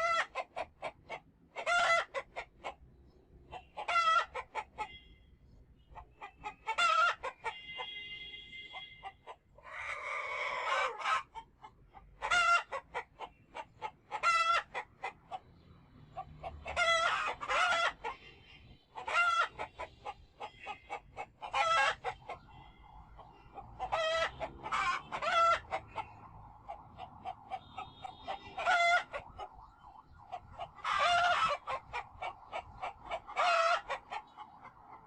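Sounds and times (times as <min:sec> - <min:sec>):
chickens clucking: 0:00.0 - 0:05.0, 0:05.8 - 0:07.8, 0:08.7 - 0:35.0
loud pitched chicken call: 0:08.7 - 0:11.3, 0:16.6 - 0:18.2, 0:19.0 - 0:29.6, 0:30.3 - 0:35.0.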